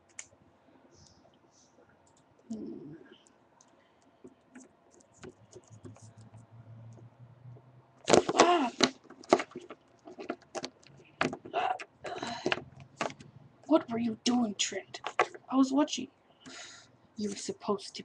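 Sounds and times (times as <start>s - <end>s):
plastic figures clicking and tapping: 8.1s - 13.3s, 15.0s - 15.4s.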